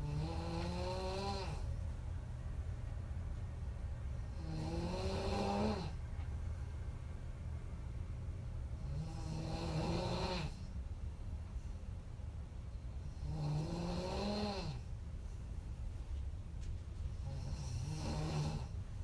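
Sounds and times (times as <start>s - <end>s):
woman snoring: 0.0s - 1.7s, 4.4s - 6.0s, 8.8s - 10.6s, 13.1s - 14.8s, 17.2s - 18.8s.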